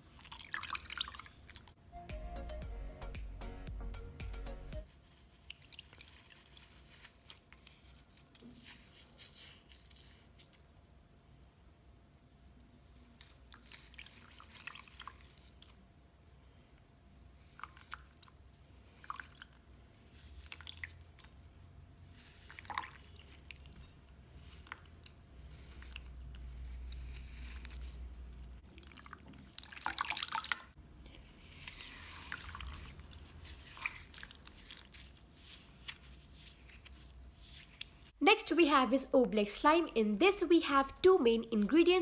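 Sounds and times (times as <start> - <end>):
slime squished by hand: 17.4 - 38.2.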